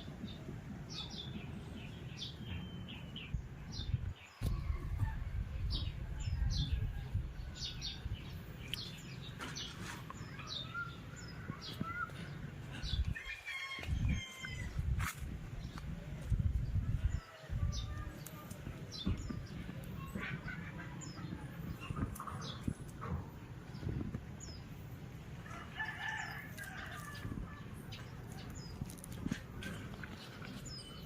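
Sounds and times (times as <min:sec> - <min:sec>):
small birds chirping: 0:00.0 - 0:14.8, 0:15.5 - 0:31.0.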